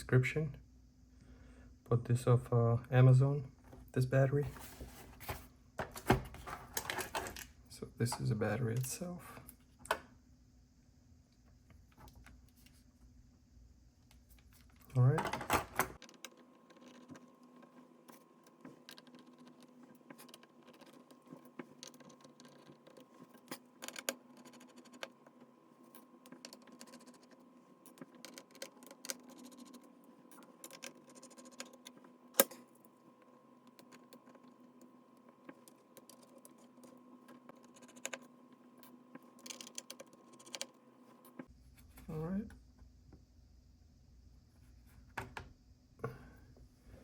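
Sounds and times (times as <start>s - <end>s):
faint steady hum: 0.0s - 47.0s
tool clicking on laptop internals: 16.0s - 40.8s.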